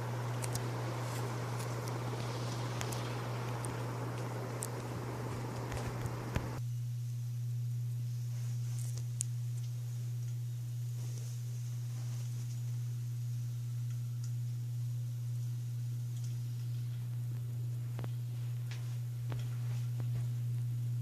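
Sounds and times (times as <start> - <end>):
faint clicks: 0.0 - 6.6
rushing noise: 0.0 - 6.6
ceiling fan motor humming: 0.0 - 21.0.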